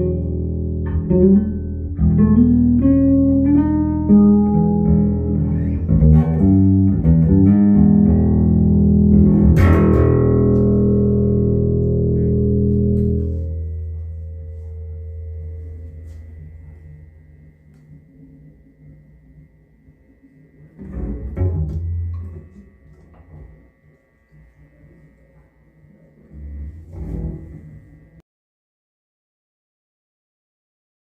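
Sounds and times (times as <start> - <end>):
bass guitar plucked notes: 0.0 - 18.0, 20.8 - 23.6.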